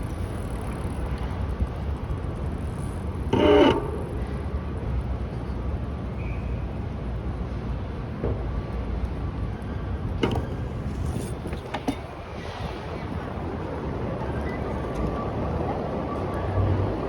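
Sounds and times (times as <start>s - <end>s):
city traffic rumble: 0.0s - 17.0s.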